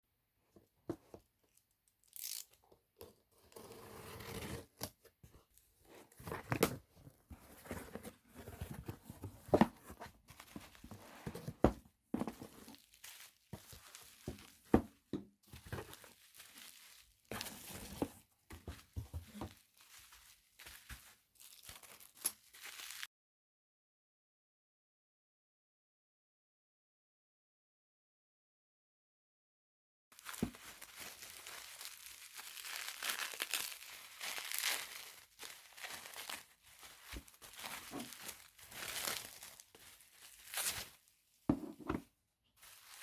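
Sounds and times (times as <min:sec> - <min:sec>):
packaging tearing and crinkling: 0:02.0 - 0:02.6, 0:15.6 - 0:17.7, 0:19.9 - 0:23.1, 0:30.2 - 0:41.1.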